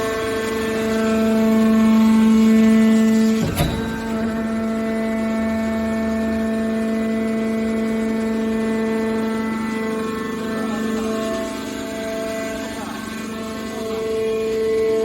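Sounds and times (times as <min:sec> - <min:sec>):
hydraulic pump drone: 0:03.1 - 0:10.4
sharp knock: 0:03.4 - 0:04.9.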